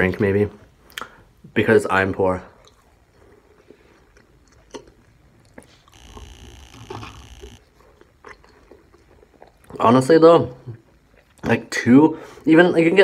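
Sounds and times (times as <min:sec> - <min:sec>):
chewing food: 0:02.2 - 0:12.4
faint hiss with high tones: 0:05.9 - 0:07.6.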